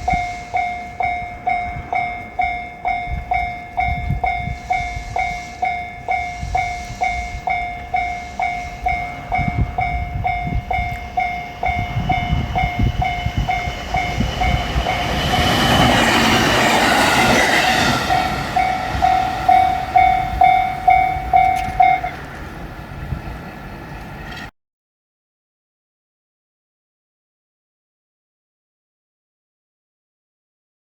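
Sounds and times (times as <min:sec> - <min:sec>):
train passing: 0:00.0 - 0:24.5
level crossing bell dinging: 0:17.7 - 0:22.2.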